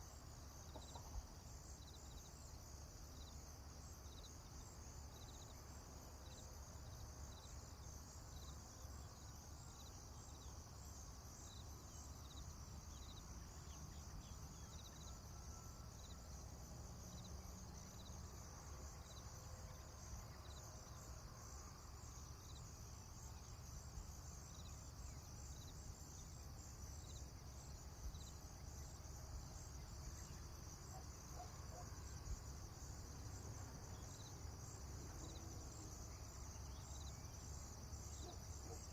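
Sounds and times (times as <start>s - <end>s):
insects chirping: 0.0s - 38.9s.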